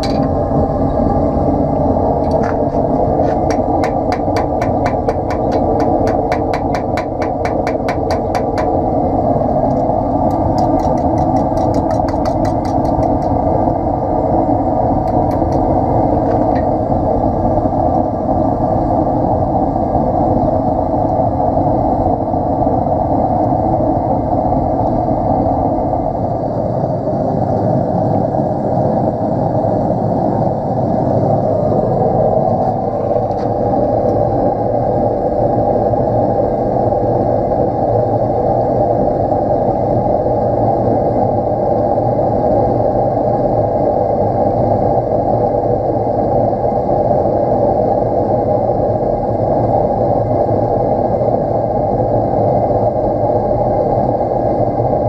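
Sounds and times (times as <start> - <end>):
forge roaring: 0.0 - 55.0
hammer tapping on anvil: 3.4 - 8.7.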